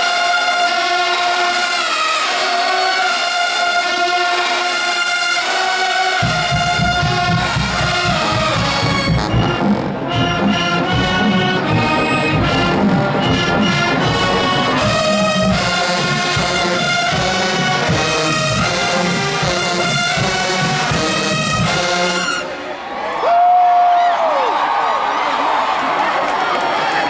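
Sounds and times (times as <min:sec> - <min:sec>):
marching band brass: 0:00.0 - 0:22.8
heavy low drums: 0:06.2 - 0:22.4.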